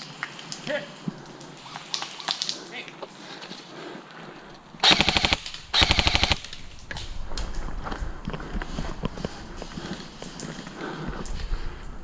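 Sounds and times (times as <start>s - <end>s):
airsoft gun full-auto burst: 4.8s - 6.4s.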